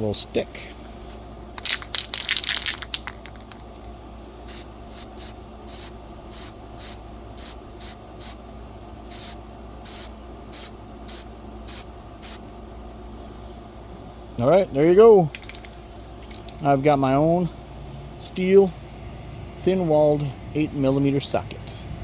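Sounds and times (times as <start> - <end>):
spray can rattling: 1.6 - 3.7
short hissing spray bursts: 4.5 - 8.4, 9.1 - 12.4, 15.6 - 16.2.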